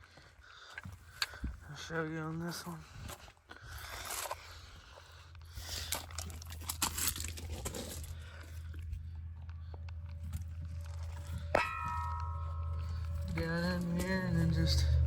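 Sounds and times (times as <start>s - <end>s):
steady low hum: 4.5s - 15.0s.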